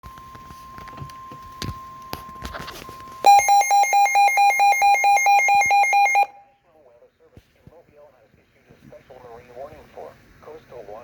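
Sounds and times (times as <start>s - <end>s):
faint steady warning tone: 0.0s - 6.8s
radio alarm beeping: 0.1s - 6.6s.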